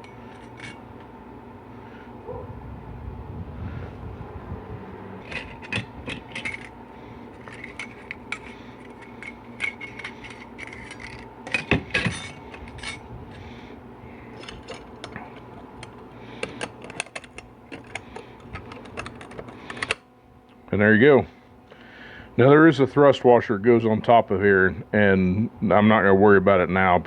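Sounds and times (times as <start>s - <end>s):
metal clutch parts clinking: 0.0s - 0.8s, 5.2s - 20.0s.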